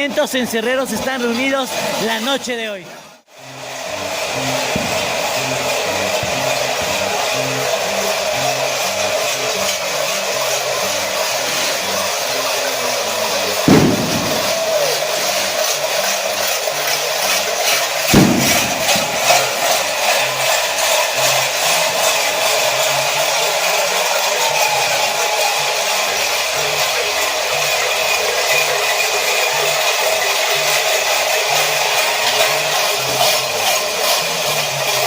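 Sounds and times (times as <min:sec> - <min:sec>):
cowbells clanging: 0:04.0 - 0:35.0
deep thumps: 0:13.7 - 0:14.7, 0:18.2 - 0:19.8.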